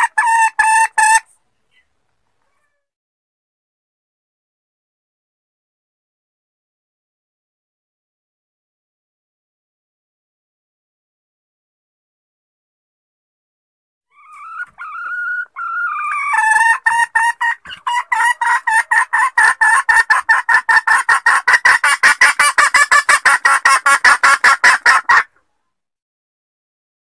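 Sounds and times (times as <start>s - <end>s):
junglefowl hen clucking: 0.0s - 1.9s, 14.1s - 25.5s.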